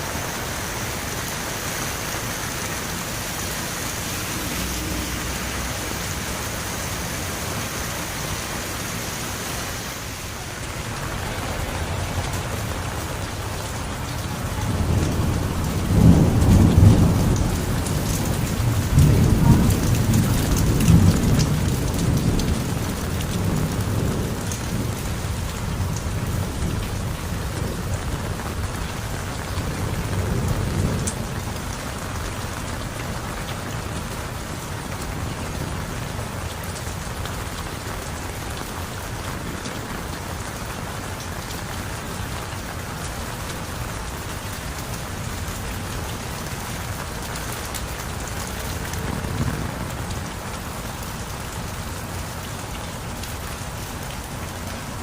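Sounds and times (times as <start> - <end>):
heavy rain: 0.0 - 55.0
thunder rolling: 10.2 - 26.8.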